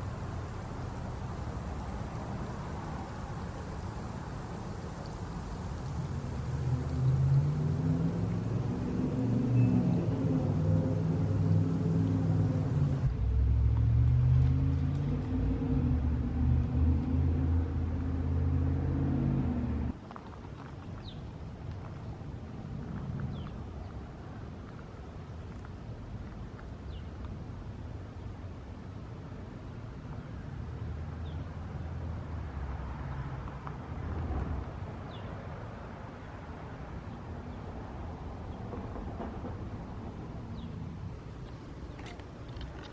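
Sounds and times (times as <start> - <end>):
low engine-like rumble: 0.0 - 28.2.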